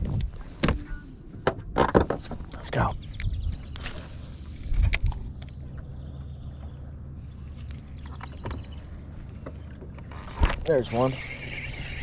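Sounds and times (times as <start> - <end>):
boat motor humming: 5.2 - 12.0.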